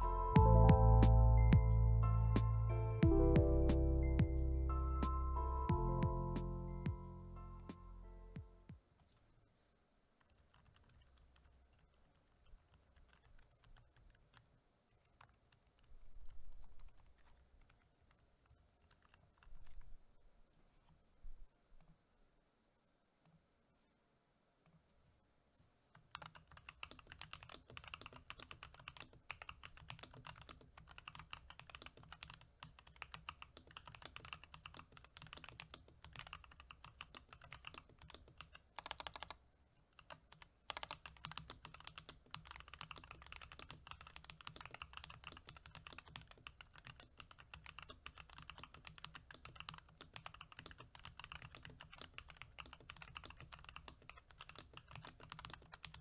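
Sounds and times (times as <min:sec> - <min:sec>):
mechanical keyboard typing: 0:10.2 - 0:11.9, 0:12.5 - 0:14.5, 0:26.0 - 0:39.4, 0:40.0 - 0:56.0.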